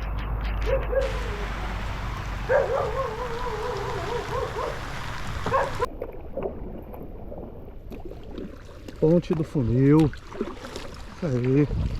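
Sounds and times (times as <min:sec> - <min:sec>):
wavering pitched call: 0:00.9 - 0:05.9
heavy rain falling on water: 0:01.0 - 0:05.9.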